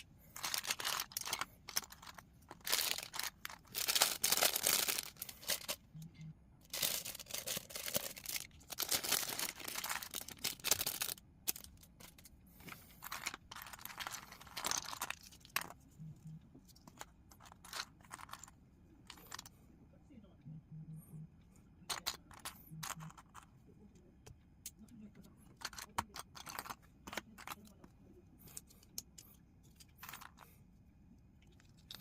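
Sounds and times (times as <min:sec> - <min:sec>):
plastic bags crinkling and tearing: 0:00.4 - 0:05.8, 0:06.6 - 0:11.7.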